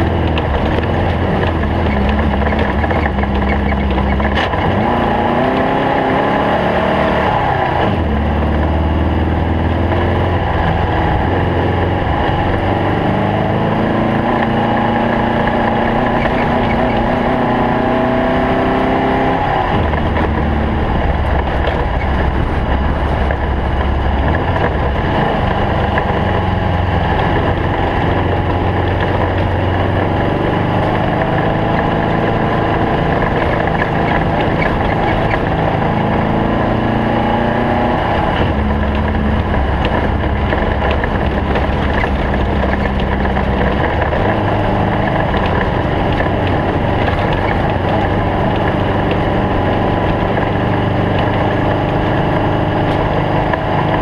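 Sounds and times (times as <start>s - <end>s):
race car engine running hard: 0.0s - 54.0s.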